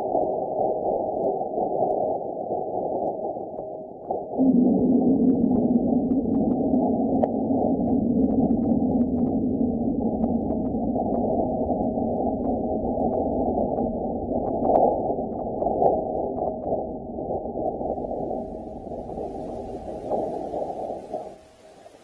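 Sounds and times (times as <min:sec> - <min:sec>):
faint crackles: 0:00.0 - 0:22.0
low rumble: 0:04.3 - 0:21.4.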